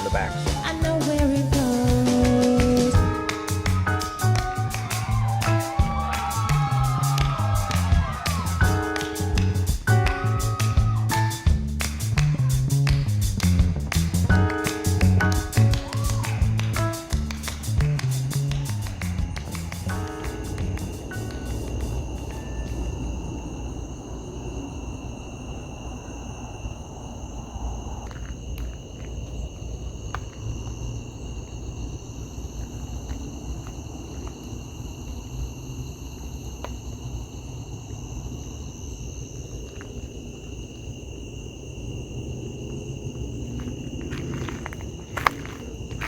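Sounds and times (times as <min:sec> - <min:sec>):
high-pitched insect chorus: 0:00.0 - 0:13.3, 0:14.0 - 0:46.0
low rumble: 0:04.6 - 0:32.0.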